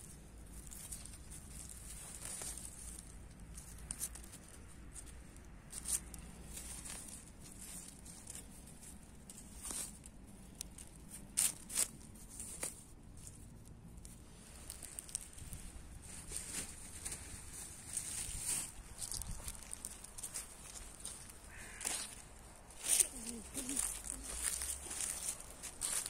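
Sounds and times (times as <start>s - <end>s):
leaves rustling: 0.0s - 26.0s.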